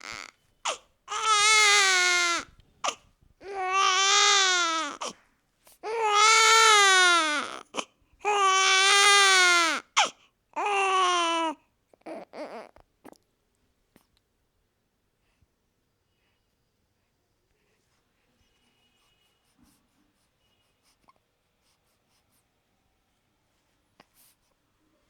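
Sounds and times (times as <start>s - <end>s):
newborn baby crying: 0.0s - 5.2s, 5.8s - 12.8s.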